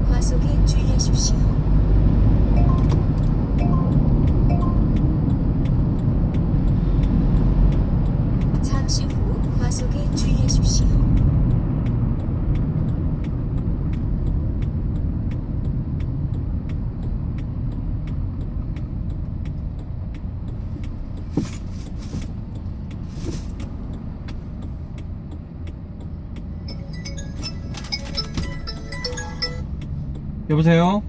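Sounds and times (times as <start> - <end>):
truck engine and road rumble: 0.0 - 31.0
phone ringing: 2.6 - 5.0, 26.7 - 29.8.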